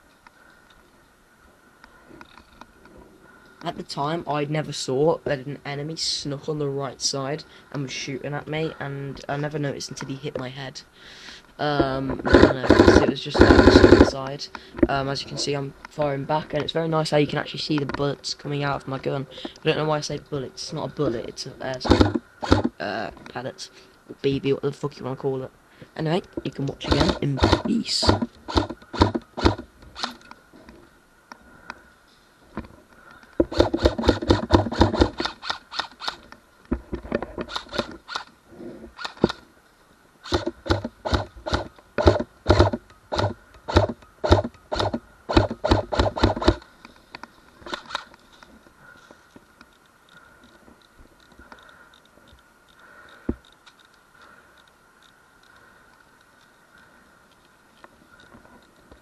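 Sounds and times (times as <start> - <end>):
airsoft rifle shots: 11.8 - 14.2, 21.8 - 22.7, 26.9 - 30.2, 33.5 - 36.2, 40.2 - 46.6.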